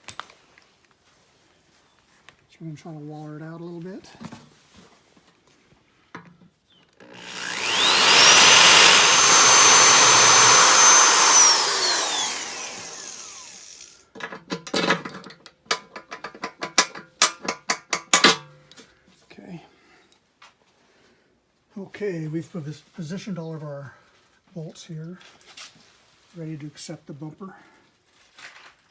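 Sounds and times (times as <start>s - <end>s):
electric drill whining: 7.0s - 14.0s.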